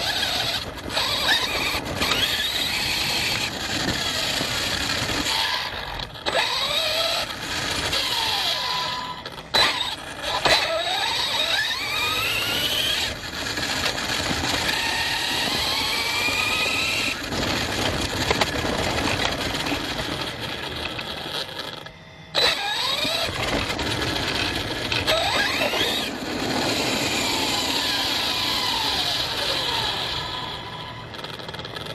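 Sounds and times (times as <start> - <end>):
rc car motor whining: 0.0 - 31.9
tyres and suspension rattle: 0.0 - 31.9.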